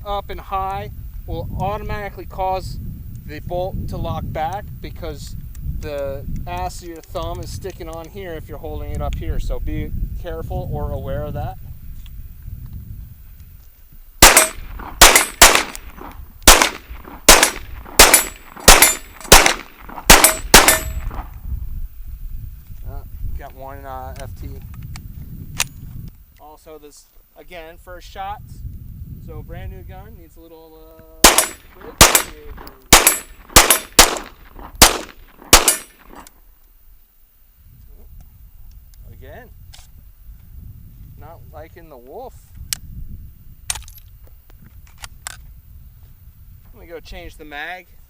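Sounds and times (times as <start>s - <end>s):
steel target plate ringing: 14.2s - 15.9s, 16.5s - 21.2s, 31.3s - 36.2s
pistol shots: 14.2s - 21.2s, 31.2s - 36.2s.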